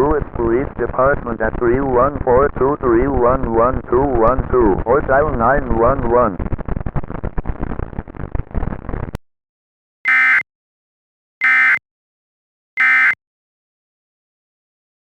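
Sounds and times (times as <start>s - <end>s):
noisy sound: 0.0s - 9.2s.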